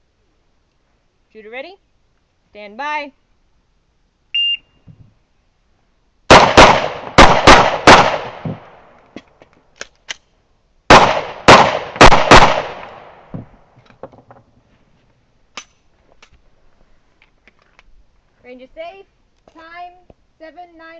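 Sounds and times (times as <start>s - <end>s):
pistol shots with echo: 6.3s - 8.8s, 10.9s - 13.3s.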